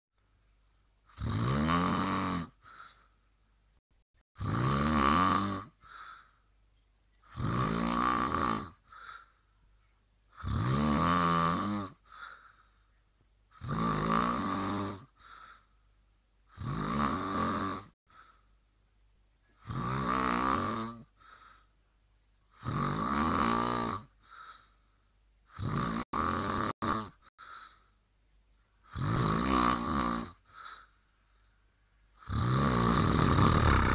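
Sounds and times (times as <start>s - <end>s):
person snoring loudly: 1.1s - 2.9s, 4.4s - 6.2s, 7.2s - 9.2s, 10.3s - 12.3s, 13.5s - 15.5s, 16.5s - 18.3s, 19.6s - 21.4s, 22.5s - 24.6s, 25.5s - 27.6s, 28.8s - 30.9s, 32.2s - 33.9s
soft breath out: 2.6s - 3.3s, 5.8s - 6.5s, 12.0s - 12.9s, 15.2s - 15.8s, 21.2s - 21.8s, 24.2s - 25.0s, 27.3s - 28.0s, 30.4s - 31.6s.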